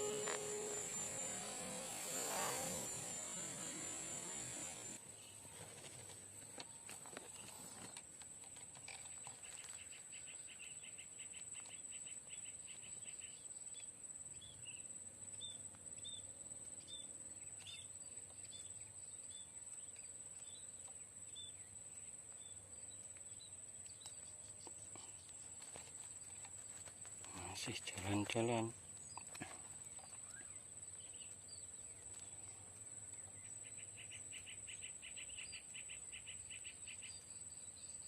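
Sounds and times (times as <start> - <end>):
high-pitched insect whine: 0.0 - 5.0.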